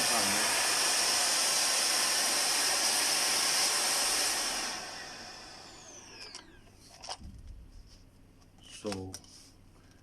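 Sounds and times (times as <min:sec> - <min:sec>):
motor winding down whine: 0:00.0 - 0:06.7
vacuum cleaner running: 0:00.0 - 0:06.8.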